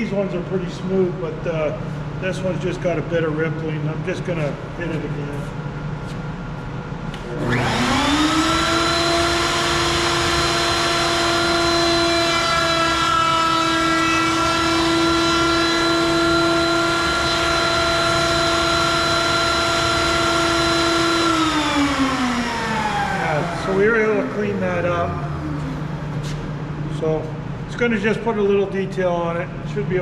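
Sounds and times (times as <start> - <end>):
router whining: 7.3 - 26.2.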